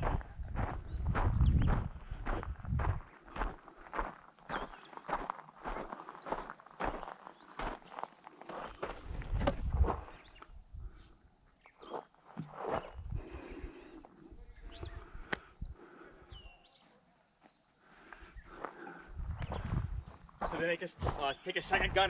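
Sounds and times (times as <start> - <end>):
footsteps: 0.0 - 10.2, 12.4 - 13.5, 16.8 - 22.0
insects chirping: 0.0 - 22.0.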